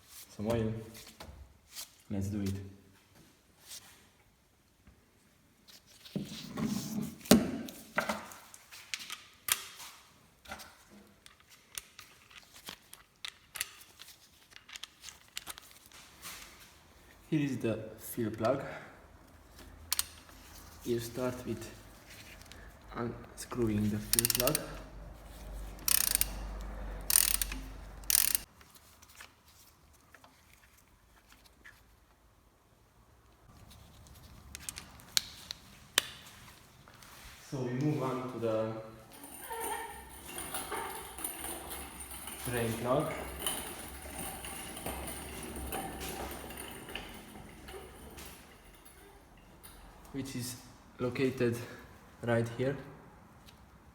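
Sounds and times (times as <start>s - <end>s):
tools clicking and knocking: 19.9s - 20.3s, 23.9s - 24.9s, 25.7s - 28.5s, 39.1s - 49.9s
ratchet wrench clicking: 24.0s - 24.8s, 25.8s - 28.5s.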